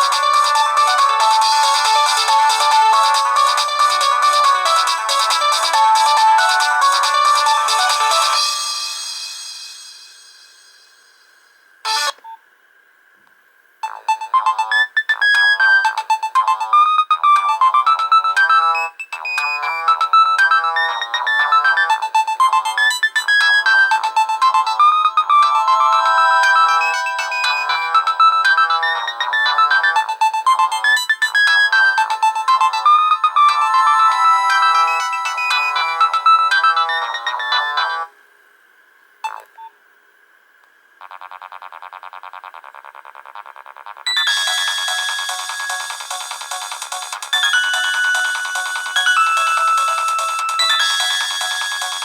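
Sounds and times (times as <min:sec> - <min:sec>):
fast pulsing electronic tone: 0:00.0 - 0:09.5, 0:43.4 - 0:52.0
electronic ringtone melody of beeps: 0:00.0 - 0:09.6, 0:13.8 - 0:38.1, 0:44.1 - 0:52.0.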